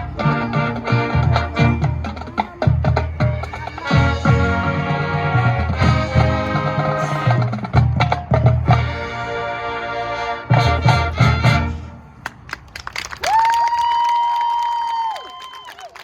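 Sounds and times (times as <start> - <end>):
drums and percussion: 0.0 - 9.3
marching band brass chords: 0.0 - 12.3.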